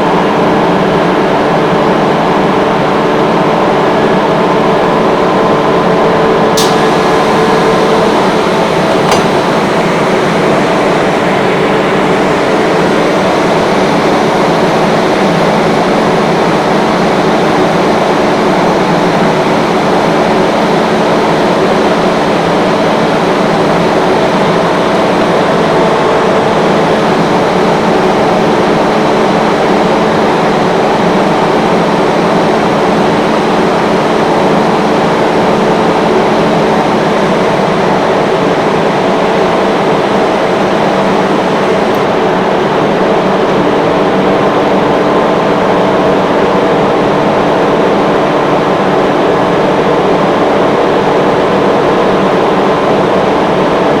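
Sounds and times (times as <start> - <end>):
air compressor running: 4.4 - 17.1
short clicks: 6.6 - 10.2.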